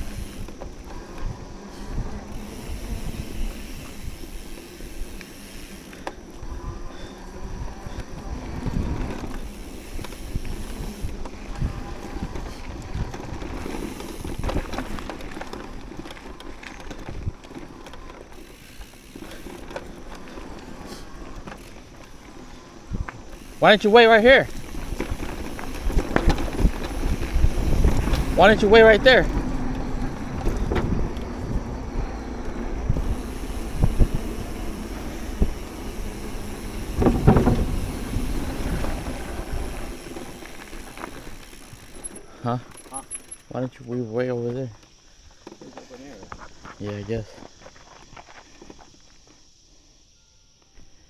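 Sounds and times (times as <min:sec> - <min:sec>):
wind buffeting microphone: 0:00.0 - 0:42.0
bike tyre rumble on dirt: 0:00.0 - 0:49.7
bike knocks and rattles: 0:08.0 - 0:20.8, 0:23.2 - 0:43.4
knocks and rattles: 0:36.9 - 0:38.9.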